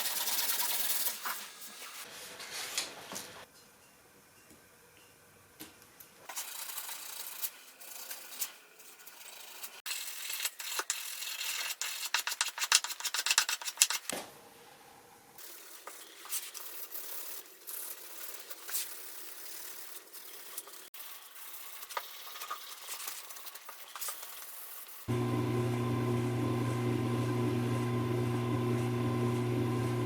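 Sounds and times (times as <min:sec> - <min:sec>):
rubbing and scraping on knife: 0:06.3 - 0:14.1, 0:15.4 - 0:25.1.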